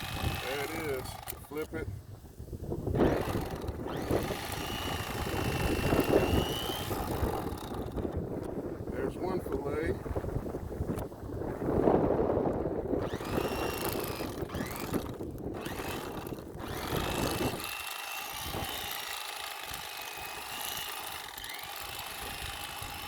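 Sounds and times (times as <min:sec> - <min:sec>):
electric knife whining: 0:00.0 - 0:01.8, 0:02.9 - 0:08.4, 0:12.9 - 0:23.0.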